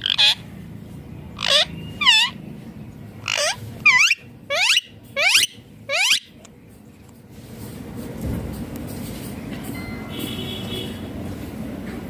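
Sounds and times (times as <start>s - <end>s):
parakeet screeching calls: 0.0s - 0.4s, 1.4s - 2.4s, 3.2s - 6.4s.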